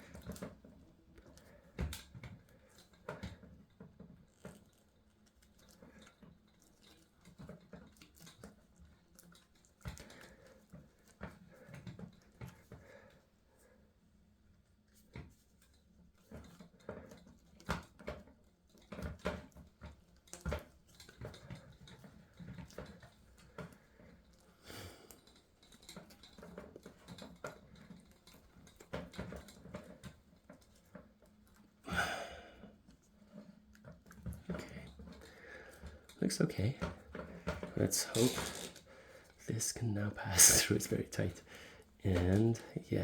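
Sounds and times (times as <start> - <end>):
plastic scrape: 37.8 - 38.9.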